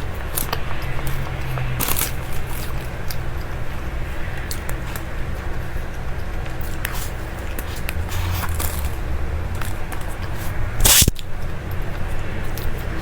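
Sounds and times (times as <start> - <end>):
wet chewing clicks: 0.0 - 3.6, 6.3 - 12.8
steady low hum: 0.0 - 11.9
loud hiss-like burst: 10.8 - 11.1.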